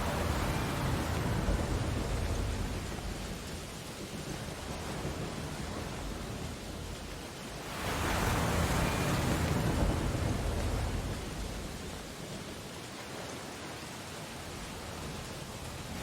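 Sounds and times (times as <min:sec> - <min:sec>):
wave breaking: 0:00.0 - 0:03.5, 0:07.7 - 0:11.8
ocean surf: 0:00.0 - 0:16.0.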